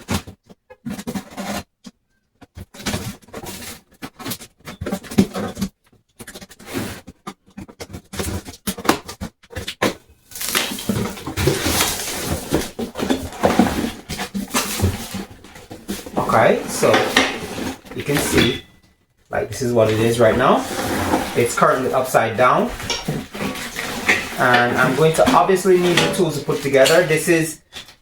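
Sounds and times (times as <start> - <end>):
cardboard rustling and scraping: 0.0 - 1.7, 2.6 - 18.8, 19.4 - 28.0.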